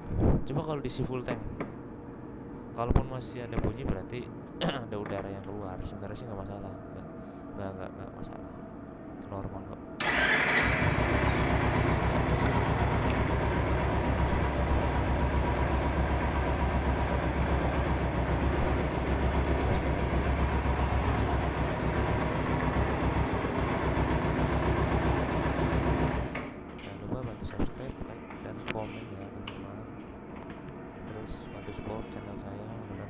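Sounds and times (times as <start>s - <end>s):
motorcycle engine idling: 10.0s - 26.4s.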